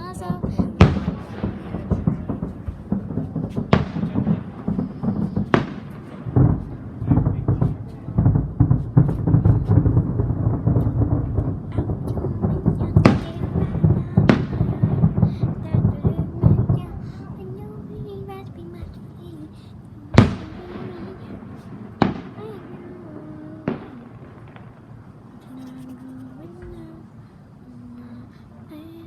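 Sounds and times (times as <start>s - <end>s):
loud firework bangs: 0.0s - 28.4s
fireworks crackling and rumbling: 0.0s - 29.0s.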